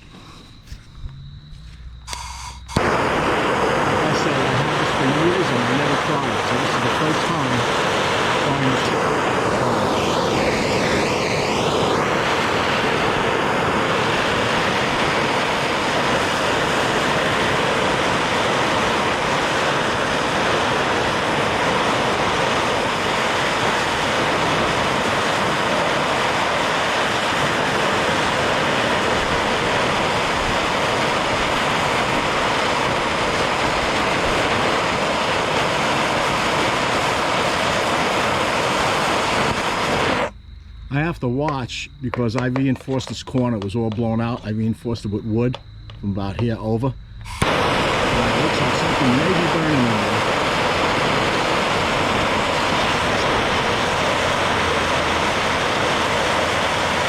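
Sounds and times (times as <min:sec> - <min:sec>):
propane torch hissing: 0:00.0 - 0:00.9, 0:02.1 - 0:40.4, 0:47.2 - 0:57.0.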